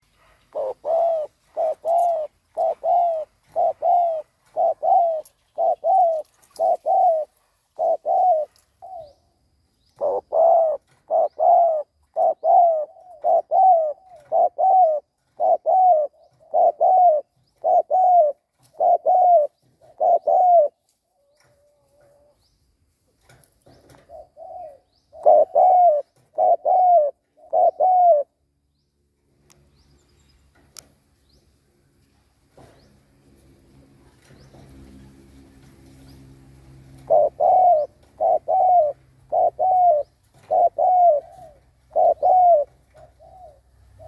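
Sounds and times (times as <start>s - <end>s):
dove cooing: 0.0s - 22.4s, 23.9s - 28.4s, 36.6s - 44.0s.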